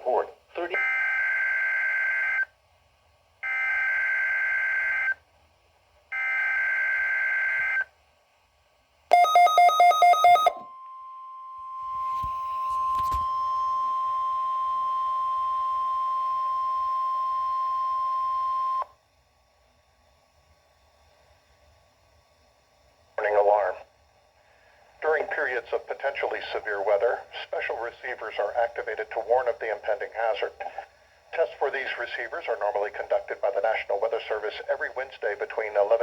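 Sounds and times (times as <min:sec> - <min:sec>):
steady alarm tone: 0:09.1 - 0:18.9.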